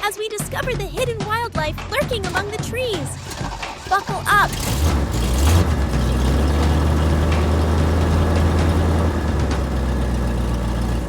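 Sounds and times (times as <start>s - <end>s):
vehicle engine humming: 2.0s - 11.0s
road noise: 3.1s - 11.0s.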